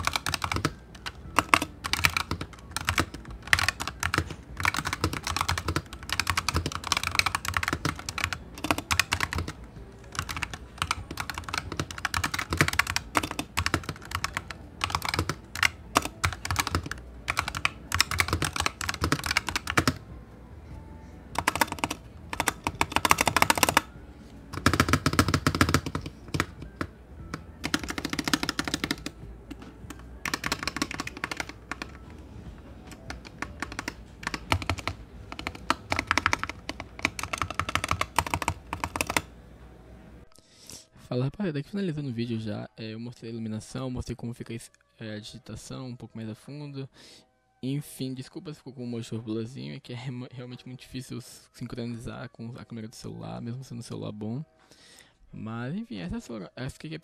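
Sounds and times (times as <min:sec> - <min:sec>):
mechanical keyboard typing: 0:00.0 - 0:20.0, 0:21.3 - 0:23.9, 0:24.5 - 0:32.2, 0:32.8 - 0:39.3.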